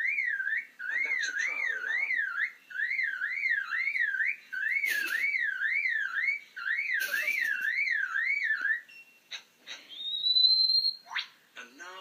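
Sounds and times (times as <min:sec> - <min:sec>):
lyrebird mimicking car alarm: 0:00.0 - 0:08.9.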